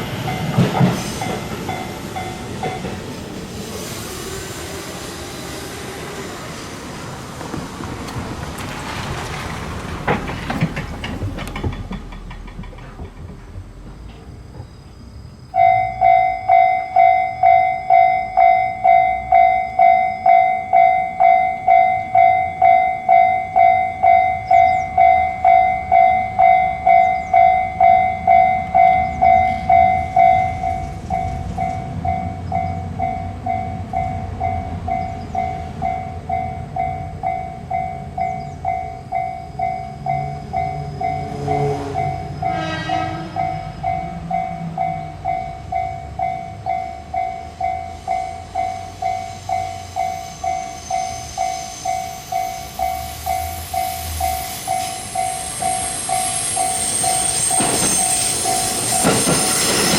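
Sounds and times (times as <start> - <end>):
train rumbling: 0.0 - 59.9
level crossing bell ringing: 15.6 - 42.3
train horn: 40.8 - 44.8.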